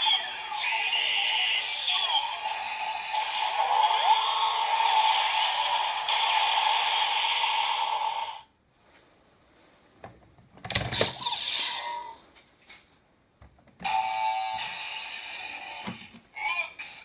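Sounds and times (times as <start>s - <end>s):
toy electronic sound effect: 0.0s - 8.4s, 13.8s - 17.0s.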